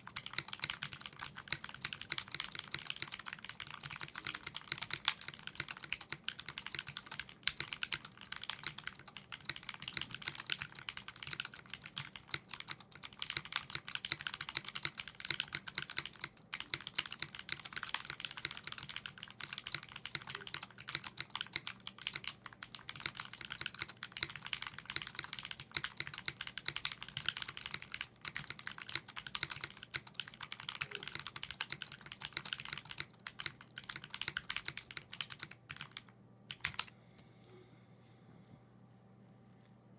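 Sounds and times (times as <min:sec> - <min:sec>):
fast typing on mechanical keyboard: 0:00.0 - 0:36.9.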